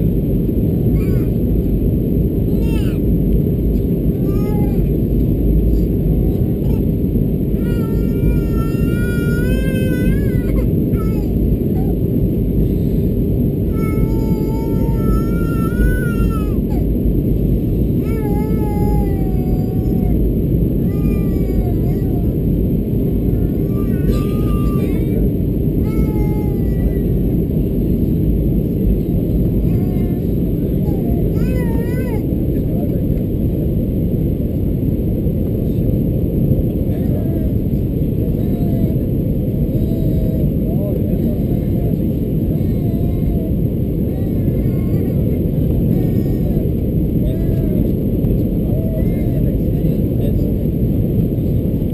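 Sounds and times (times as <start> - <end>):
airplane cabin roar: 0.0 - 51.9
faint voices: 28.6 - 33.7, 36.7 - 51.8.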